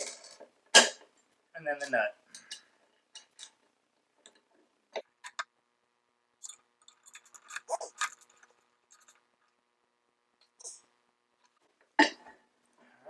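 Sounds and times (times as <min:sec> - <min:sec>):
small metal hardware clicking: 0:05.2 - 0:05.4, 0:06.4 - 0:09.2.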